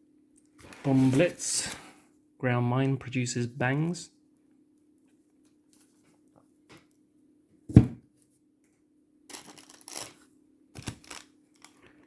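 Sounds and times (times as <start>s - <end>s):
thump of item set down: 7.7s - 8.1s
packaging rustling and crinkling: 10.8s - 12.0s.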